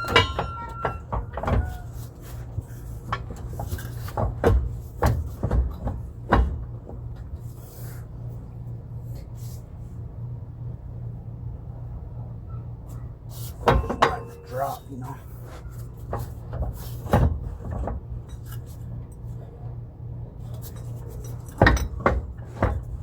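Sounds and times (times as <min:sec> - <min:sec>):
metal clunks and knocks: 0:00.0 - 0:07.5, 0:13.6 - 0:14.6, 0:15.9 - 0:18.7, 0:20.6 - 0:23.0
steady low hum: 0:00.0 - 0:23.0.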